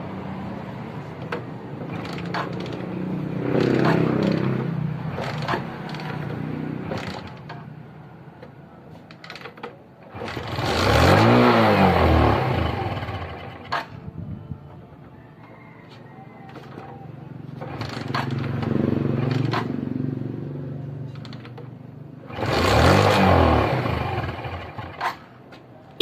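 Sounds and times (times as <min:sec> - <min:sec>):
motorcycle engine revving: 0:01.6 - 0:07.6, 0:09.3 - 0:14.0, 0:17.4 - 0:25.3.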